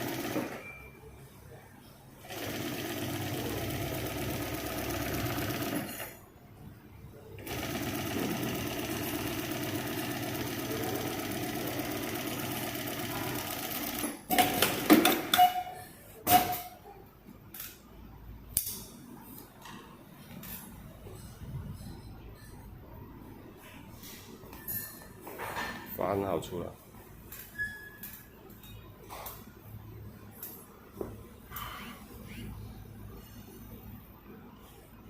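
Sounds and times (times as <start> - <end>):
sewing machine stitching: 0.0 - 0.7, 2.2 - 6.2, 7.4 - 15.2.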